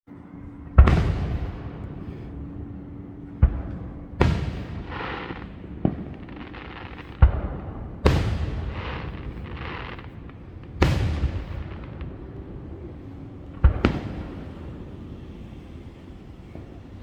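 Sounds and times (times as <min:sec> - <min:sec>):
fireworks booming: 0:00.5 - 0:17.0
fireworks crackling hiss: 0:00.9 - 0:17.0.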